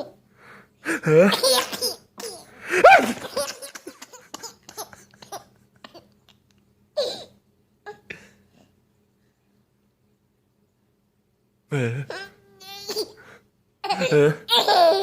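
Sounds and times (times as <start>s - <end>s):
baby laughing: 1.0s - 6.2s, 12.1s - 13.2s, 13.8s - 15.0s.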